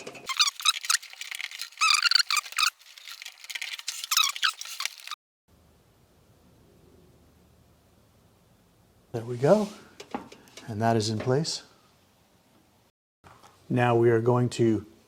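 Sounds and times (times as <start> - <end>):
plastic connector squeaking: 0.3 - 5.2.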